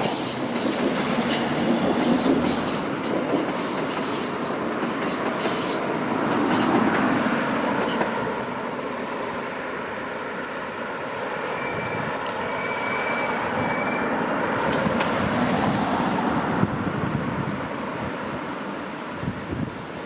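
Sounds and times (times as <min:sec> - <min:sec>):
train rolling through station: 0:00.0 - 0:20.0
faint high whistle: 0:11.5 - 0:14.2.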